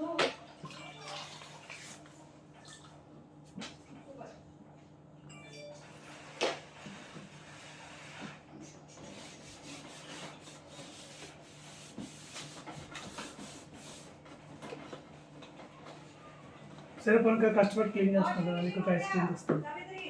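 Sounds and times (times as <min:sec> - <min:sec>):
cloth scrubbing refrigerator surface: 0:06.0 - 0:14.5.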